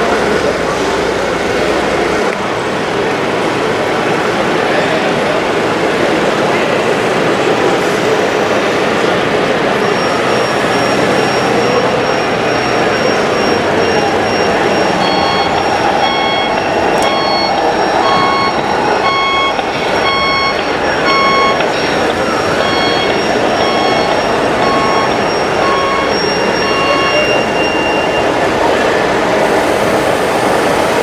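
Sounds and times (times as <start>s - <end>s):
reversing alarm beeping: 7.5s - 31.0s.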